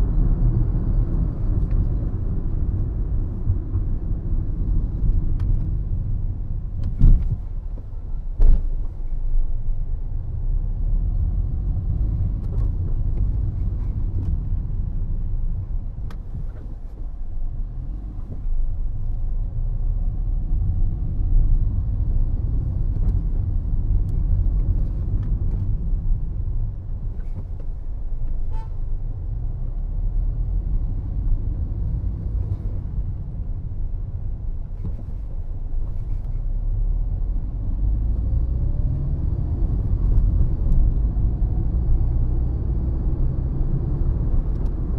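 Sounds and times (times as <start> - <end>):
car tyres and engine rumble: 0.0 - 44.9
short car horn: 28.5 - 28.8.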